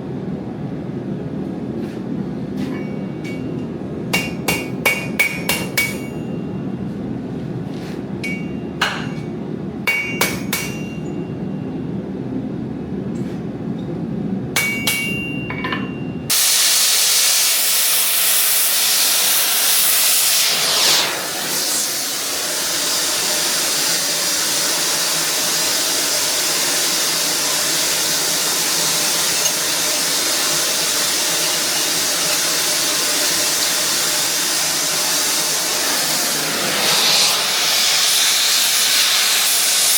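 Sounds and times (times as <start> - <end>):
steady low hum: 0.0 - 16.3
hammer striking metal: 2.6 - 6.4, 8.2 - 11.2, 14.6 - 16.1, 29.2 - 33.8
steady hiss: 16.3 - 39.9.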